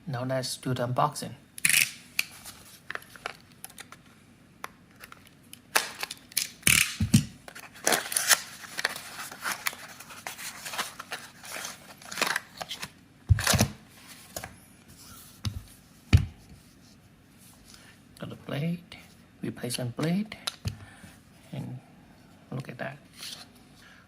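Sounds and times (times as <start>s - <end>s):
packaging rustling and tearing: 2.3s - 4.1s, 4.9s - 14.5s.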